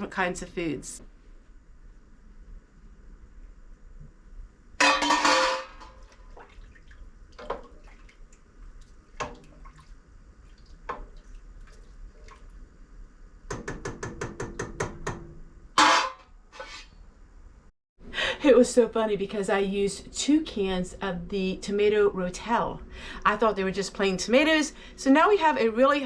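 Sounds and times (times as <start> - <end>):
cookware clanging: 4.8 - 6.1.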